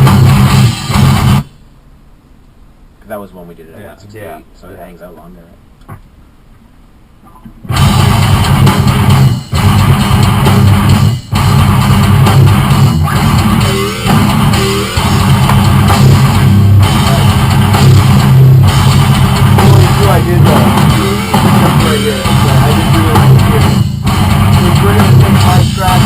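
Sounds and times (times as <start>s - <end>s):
heavy rock music: 0.0s - 1.6s, 7.7s - 26.0s.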